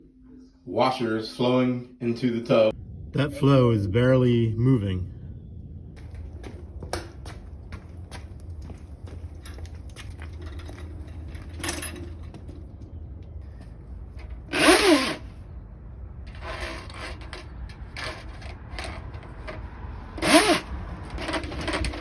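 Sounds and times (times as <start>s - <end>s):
drain tool clicking and scraping: 16.3s - 22.0s.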